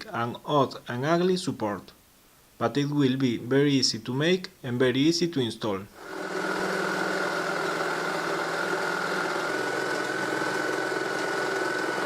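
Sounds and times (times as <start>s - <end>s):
power tool motor whining: 6.0s - 12.0s.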